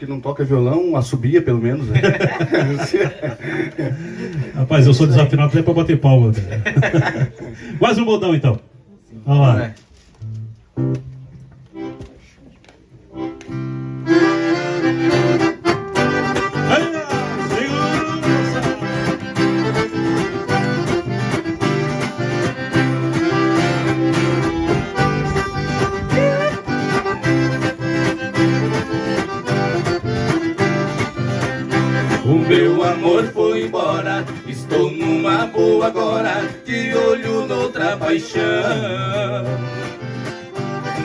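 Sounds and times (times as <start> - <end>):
guitar notes: 10.2 - 12.5, 13.1 - 41.0
accordion melody: 11.6 - 12.4, 13.0 - 41.0.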